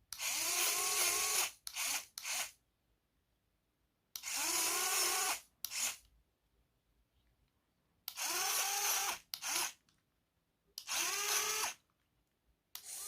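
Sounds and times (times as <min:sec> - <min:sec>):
small electric motor whirring: 0:00.2 - 0:02.6, 0:04.2 - 0:06.0, 0:08.1 - 0:09.8, 0:10.8 - 0:11.8, 0:12.8 - 0:13.0.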